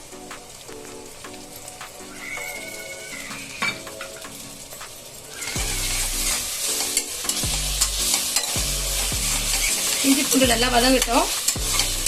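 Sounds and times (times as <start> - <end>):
paste frying in hot oil: 0.2 - 12.0
spoon scraping a pan: 5.6 - 10.4, 11.0 - 12.0.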